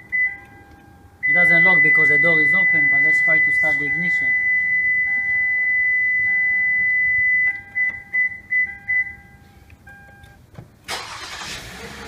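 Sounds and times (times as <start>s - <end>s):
electronic warning beeps: 0.0s - 10.4s
car engine starting: 10.4s - 12.0s.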